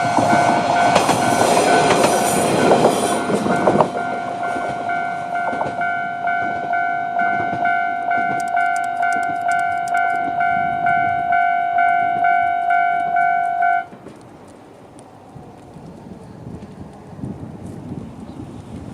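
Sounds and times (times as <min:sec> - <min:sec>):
level crossing alarm dinging: 0:00.0 - 0:13.9
railcar rumble: 0:00.0 - 0:18.9.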